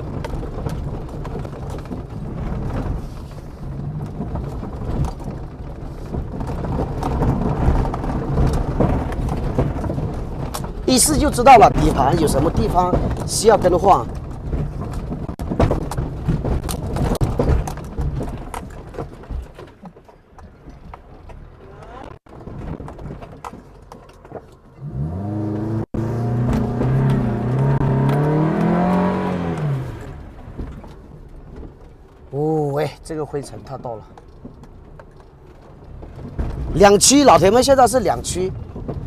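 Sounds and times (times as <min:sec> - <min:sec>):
chassis knocks and rattles: 0:00.0 - 0:32.4, 0:33.5 - 0:39.0
vehicle rumbling over rough ground: 0:00.0 - 0:39.0
engine revving hard: 0:24.8 - 0:30.0.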